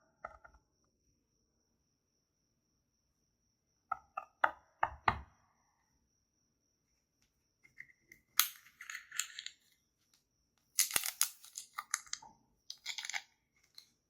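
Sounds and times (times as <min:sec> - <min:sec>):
small pieces scraping: 0:10.8 - 0:13.9.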